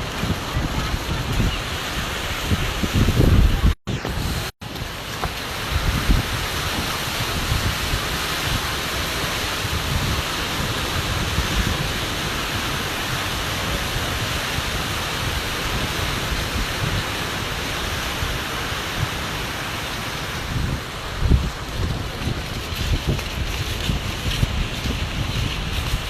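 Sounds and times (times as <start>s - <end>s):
wind rushing across microphone: 0.0s - 26.0s
wind buffeting rumbles: 20.2s - 26.0s.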